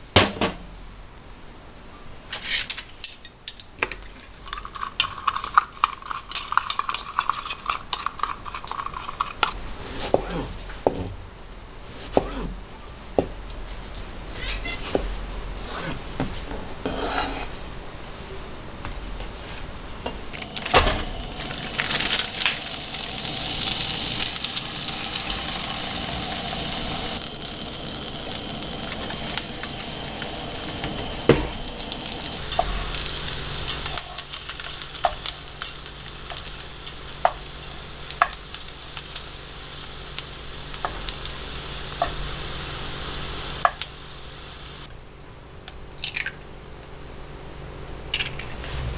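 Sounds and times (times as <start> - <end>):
food sizzling in a frying pan: 4.1 - 9.6, 20.3 - 44.9
utensil clicking against pan: 4.5 - 9.6.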